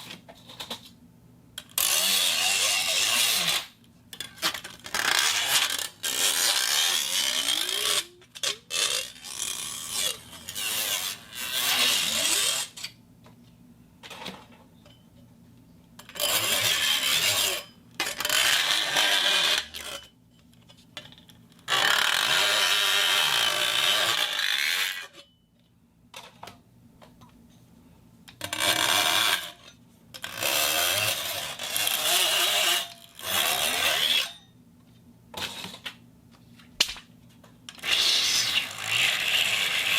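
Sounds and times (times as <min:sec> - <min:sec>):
steel sheet scraping: 0:01.8 - 0:03.7, 0:04.3 - 0:12.8, 0:16.2 - 0:20.0, 0:37.8 - 0:39.9.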